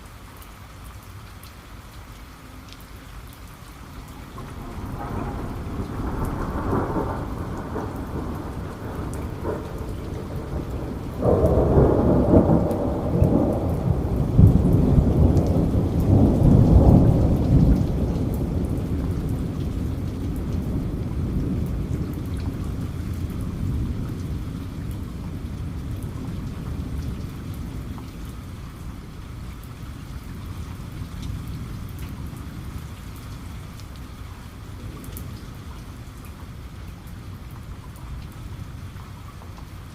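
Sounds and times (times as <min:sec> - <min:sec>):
steady rain: 0:00.0 - 0:39.9
thunder rumbling: 0:04.0 - 0:33.6.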